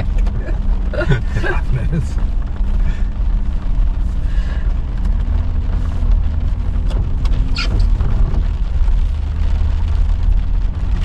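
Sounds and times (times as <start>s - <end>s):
car engine humming: 0.0s - 11.0s
short high squeak: 7.5s - 7.9s.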